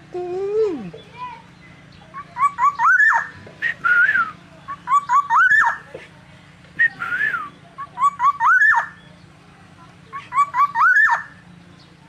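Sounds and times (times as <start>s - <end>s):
bird singing fluty whistles: 2.4s - 5.8s, 6.8s - 9.1s.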